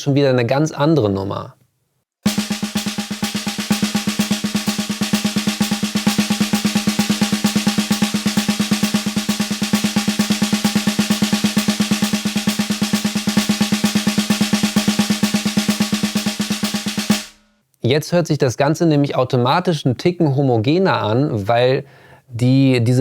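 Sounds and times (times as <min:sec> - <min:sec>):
snare drum roll: 0:02.2 - 0:17.5.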